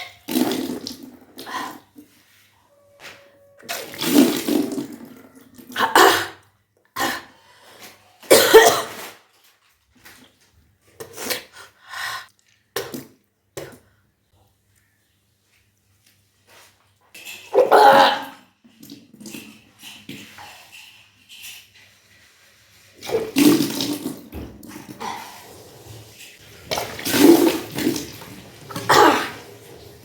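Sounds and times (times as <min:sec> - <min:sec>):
person retching and vomiting: 0:00.0 - 0:02.0, 0:03.6 - 0:07.4, 0:08.3 - 0:09.2, 0:17.5 - 0:19.0, 0:28.7 - 0:29.5
person coughing: 0:05.8 - 0:06.4, 0:08.3 - 0:09.0, 0:28.7 - 0:29.4
water splashing: 0:22.8 - 0:30.0.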